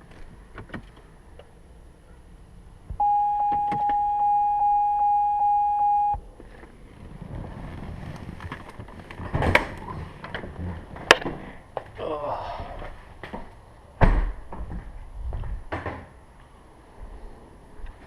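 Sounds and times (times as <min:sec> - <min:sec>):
electronic warning chime tone: 0:03.0 - 0:06.2
rustling: 0:06.4 - 0:11.6.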